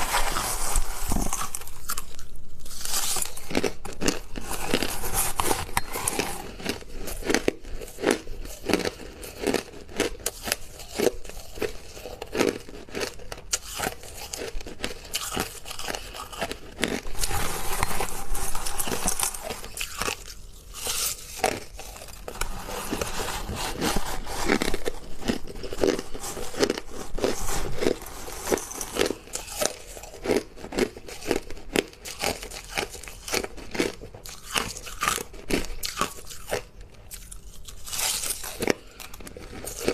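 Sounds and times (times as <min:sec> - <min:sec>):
chewing crushed ice: 0:00.0 - 0:39.9.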